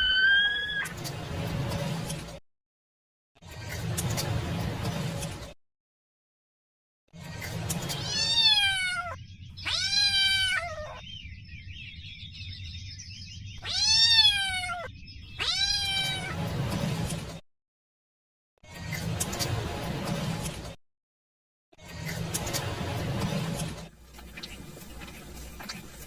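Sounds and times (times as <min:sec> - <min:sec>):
kitten meowing: 0:00.0 - 0:00.9, 0:08.0 - 0:11.0, 0:13.6 - 0:16.4.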